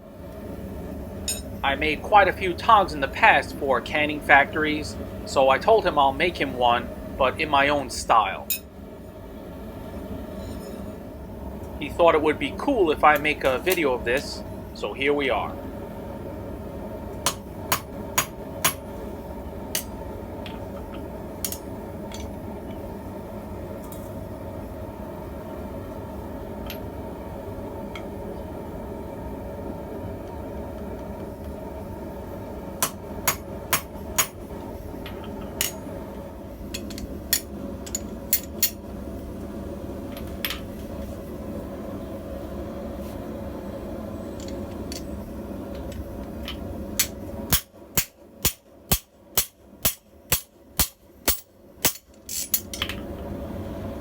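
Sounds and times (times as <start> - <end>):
steady low hum: 0.0 - 54.0
hammer striking steel anvil: 1.3 - 1.5, 32.8 - 34.4, 47.0 - 52.7.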